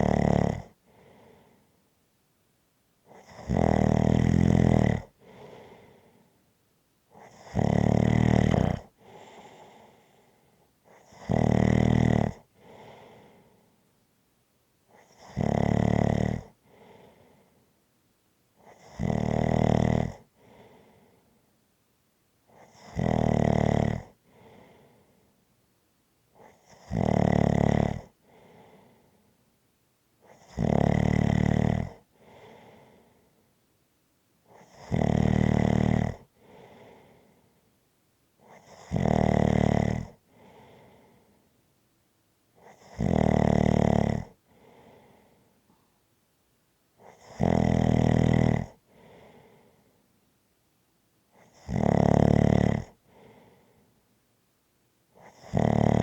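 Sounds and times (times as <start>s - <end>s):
snoring: 0.0s - 1.6s, 3.1s - 6.3s, 7.1s - 13.6s, 14.9s - 17.5s, 18.6s - 21.2s, 22.5s - 25.2s, 26.4s - 29.2s, 30.2s - 33.3s, 34.5s - 37.4s, 38.4s - 41.4s, 42.6s - 45.4s, 47.0s - 49.9s, 51.3s - 53.8s, 55.2s - 56.0s.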